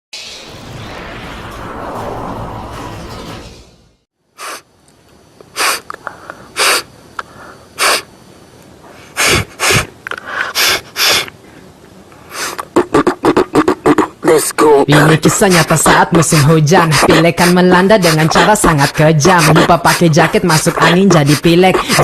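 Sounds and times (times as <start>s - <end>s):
person sniffling: 4.4s - 4.6s, 5.5s - 8.1s, 8.9s - 11.3s, 12.3s - 14.2s, 15.9s - 20.0s, 20.8s - 22.0s
person sneezing: 6.6s - 6.9s, 9.1s - 11.3s, 12.3s - 20.0s, 20.7s - 22.0s
short vocal beats: 12.5s - 22.0s
person coughing: 12.7s - 14.3s, 16.8s - 20.0s, 20.7s - 22.0s.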